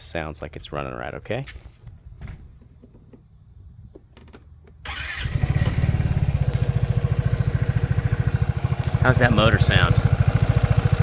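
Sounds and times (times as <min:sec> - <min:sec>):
scooter engine starting and idling: 0:04.2 - 0:11.0.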